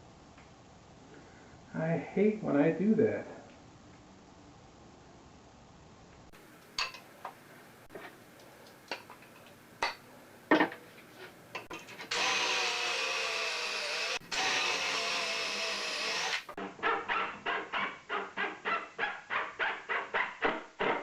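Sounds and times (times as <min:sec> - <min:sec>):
power drill running in wood: 0:12.1 - 0:16.6.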